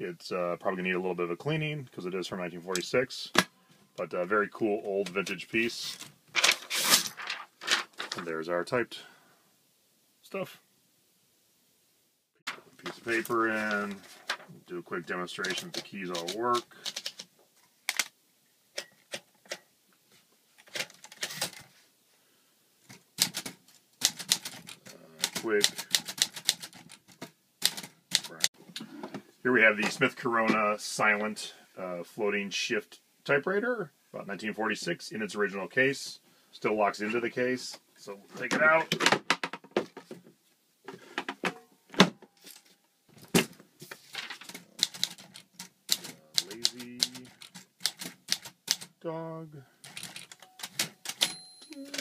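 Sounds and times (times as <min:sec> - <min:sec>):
typewriter clacking: 0:23.2 - 0:28.5, 0:44.4 - 0:48.9, 0:49.8 - 0:51.4.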